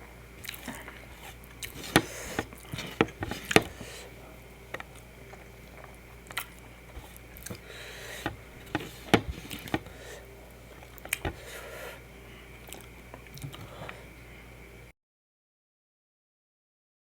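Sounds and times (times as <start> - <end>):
wet chewing and mouth smacks: 0.4 - 1.7, 4.9 - 7.6.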